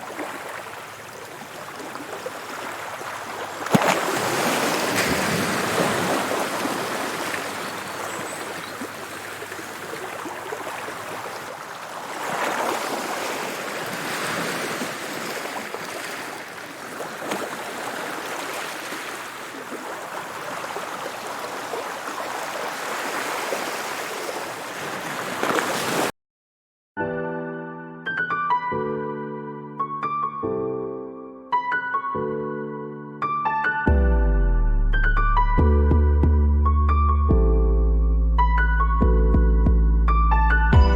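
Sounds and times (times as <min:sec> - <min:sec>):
sea waves breaking on a beach: 0:00.0 - 0:26.1.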